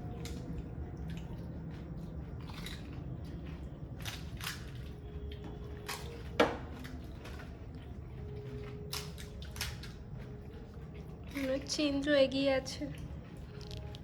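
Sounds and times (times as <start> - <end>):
wet squishy chewing: 0.0 - 14.0
crisp shells cracking between teeth: 13.5 - 14.0.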